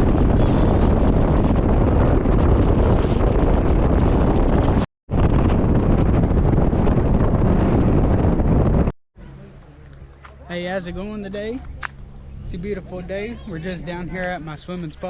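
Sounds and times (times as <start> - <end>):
wind buffeting microphone: 0.0 - 8.9.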